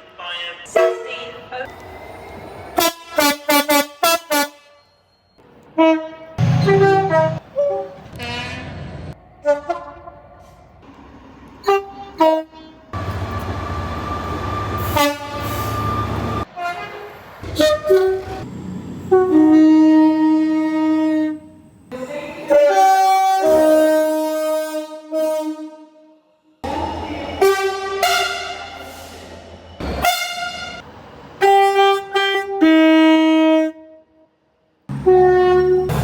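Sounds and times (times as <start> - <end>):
train horn blasts: 2.8 - 4.9, 5.8 - 8.8, 11.6 - 12.9, 14.8 - 18.4, 19.0 - 26.3, 27.4 - 29.0, 30.0 - 30.8, 31.4 - 34.2, 34.9 - 36.0
deep train rumble: 6.4 - 11.8, 12.8 - 24.5.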